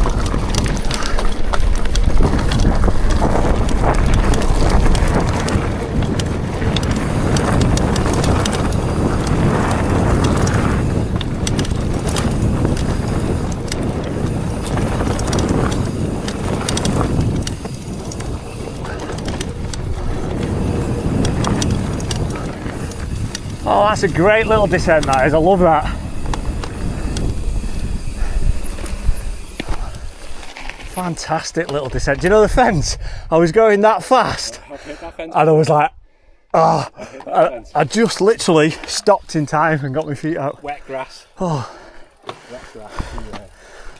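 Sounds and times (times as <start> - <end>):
bike knocks and rattles: 0.0 - 32.4
bike tyres rumbling: 0.0 - 35.8, 36.7 - 43.9
wind buffeting microphone: 0.0 - 36.3, 37.0 - 43.9.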